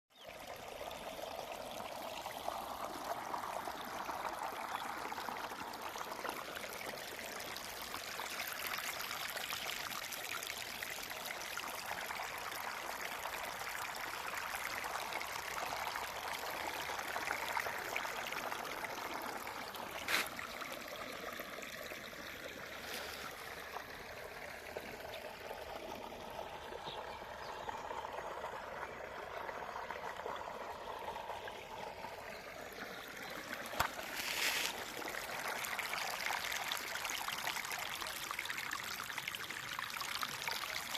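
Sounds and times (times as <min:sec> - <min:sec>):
running water splashing: 0:15.3 - 0:26.3, 0:30.8 - 0:39.6.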